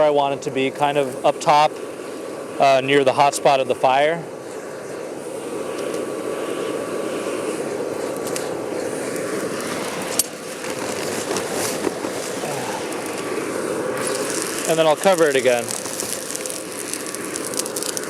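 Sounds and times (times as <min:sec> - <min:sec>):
charcoal fire rushing under air blast: 0:00.0 - 0:18.0
sharp clicks of iron on charcoal: 0:05.7 - 0:06.1, 0:08.0 - 0:18.0.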